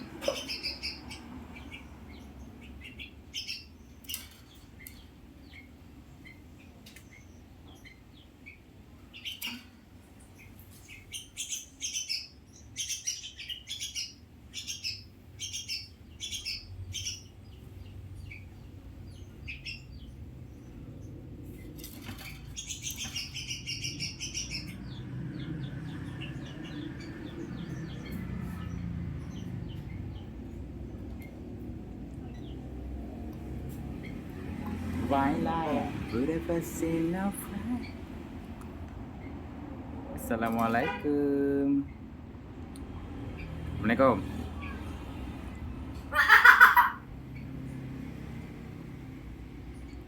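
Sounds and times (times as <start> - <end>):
myna bird calling: 0.0 - 21.7, 22.3 - 31.4, 46.0 - 47.5.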